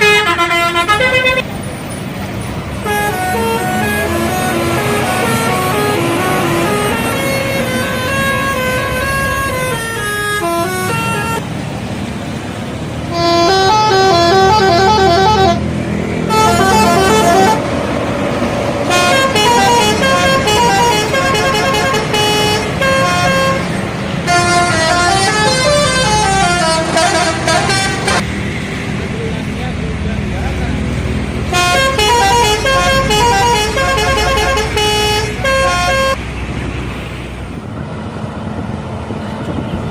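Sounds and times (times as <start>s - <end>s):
bus musical air horn melody: 0.0s - 1.5s, 2.8s - 11.7s, 13.0s - 17.9s, 18.8s - 28.2s, 31.5s - 36.2s.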